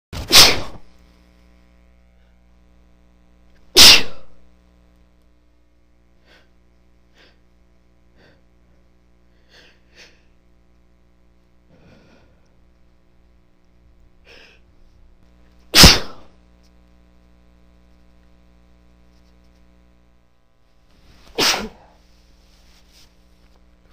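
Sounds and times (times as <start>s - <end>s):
woman sneezing: 0.2s - 0.8s, 3.8s - 4.4s, 15.8s - 16.3s, 21.3s - 22.0s.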